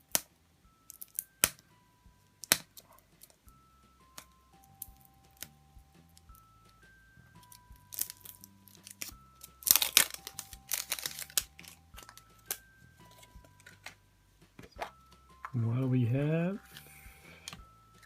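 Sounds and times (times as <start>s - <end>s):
soft background music: 0.0s - 18.0s
wrapper crinkling and tearing: 7.8s - 14.0s.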